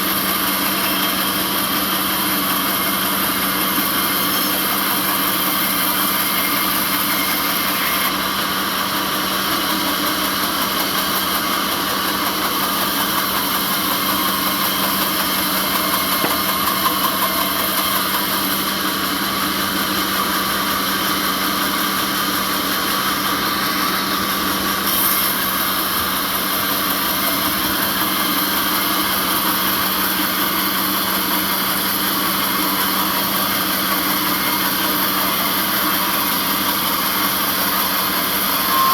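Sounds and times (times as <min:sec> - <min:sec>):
sawmill machinery hum: 0:00.0 - 0:38.9.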